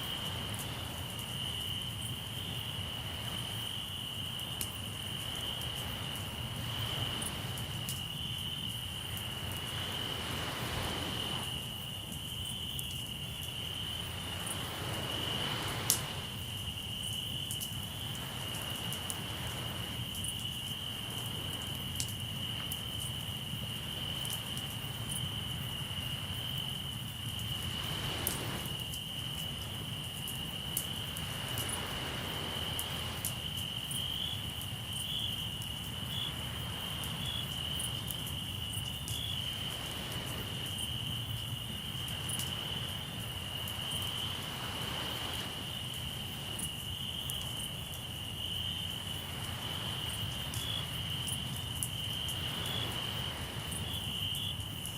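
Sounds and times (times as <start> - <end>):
crickets trilling: 0.0 - 54.9
surf washing in: 4.9 - 8.1, 8.8 - 12.2, 13.5 - 16.7, 18.0 - 22.0, 27.0 - 33.6, 36.3 - 41.3, 41.9 - 46.7, 49.0 - 54.3
campfire crackling and popping: 15.8 - 16.4.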